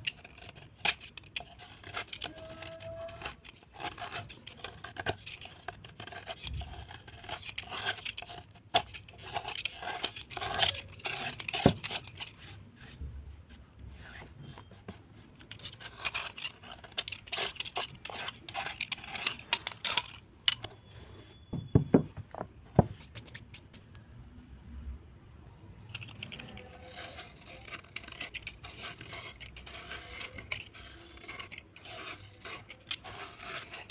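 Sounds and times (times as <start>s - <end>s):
sharp knocks: 21.5s - 22.9s.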